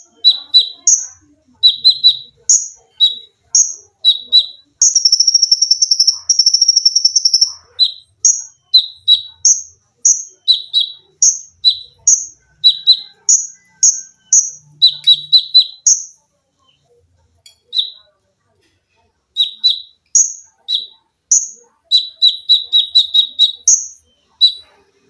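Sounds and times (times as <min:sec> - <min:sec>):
bird sharp chirps: 0:00.0 - 0:16.9, 0:19.4 - 0:24.8.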